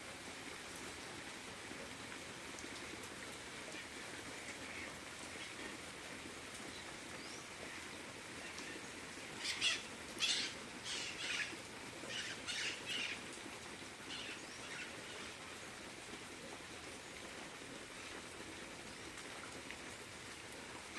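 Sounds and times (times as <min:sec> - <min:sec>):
rain hiss: 0:00.0 - 0:20.9
bird harsh calls: 0:09.4 - 0:13.2.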